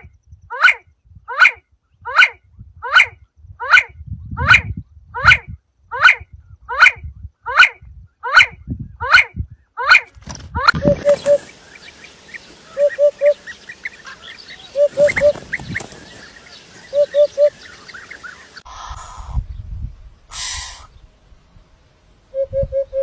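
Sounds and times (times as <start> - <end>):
small high bird chirps: 10.8 - 18.6.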